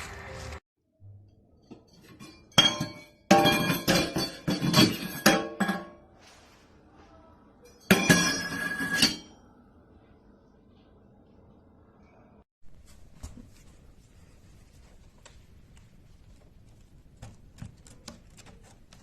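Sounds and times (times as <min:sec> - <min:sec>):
glass clinking and clattering: 0:01.6 - 0:06.0, 0:07.7 - 0:09.4.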